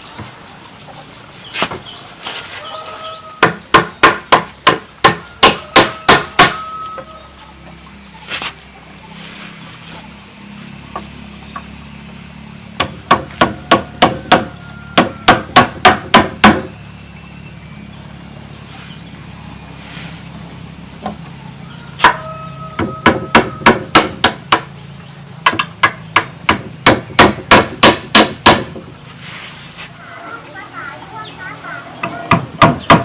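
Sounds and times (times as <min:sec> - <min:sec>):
hammer blows on bamboo: 0:01.5 - 0:07.2, 0:12.7 - 0:16.8, 0:22.0 - 0:24.8, 0:25.4 - 0:28.9, 0:32.0 - 0:33.0.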